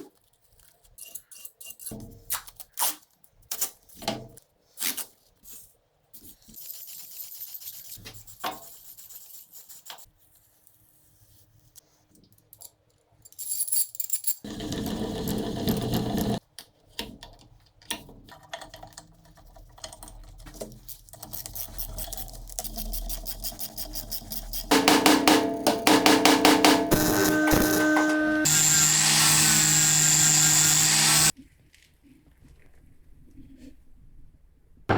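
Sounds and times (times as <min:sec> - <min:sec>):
power tool rattling: 0:14.5 - 0:16.4, 0:24.7 - 0:31.3
machine noise: 0:24.7 - 0:31.3.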